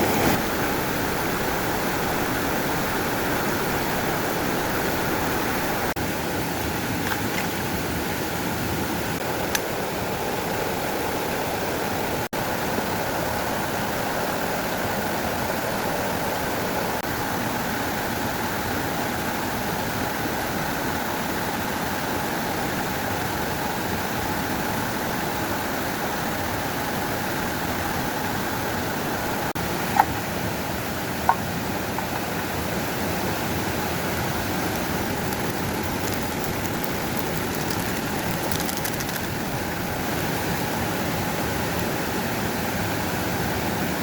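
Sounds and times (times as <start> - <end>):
flowing water rushing: 0.0 - 18.2, 27.6 - 44.0.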